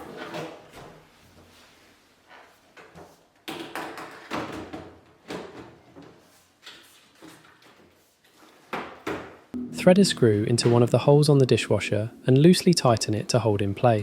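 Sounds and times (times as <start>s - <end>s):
metallic ringing: 9.6s - 12.4s.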